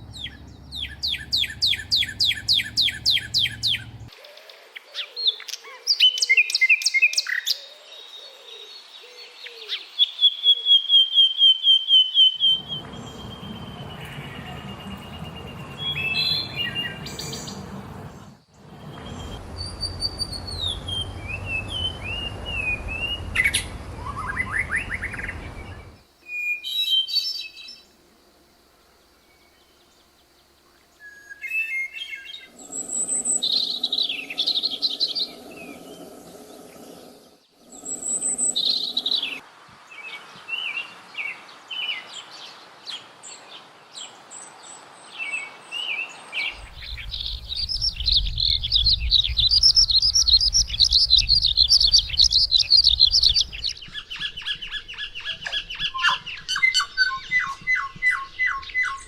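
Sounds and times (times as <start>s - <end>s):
low background rumble: 0.0s - 4.1s, 12.6s - 26.0s, 46.5s - 53.9s
songbirds singing: 0.0s - 59.0s.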